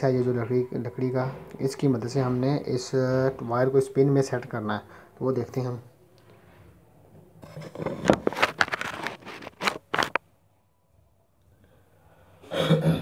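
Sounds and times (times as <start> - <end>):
scrapes rustles and clicks: 7.4 - 10.2.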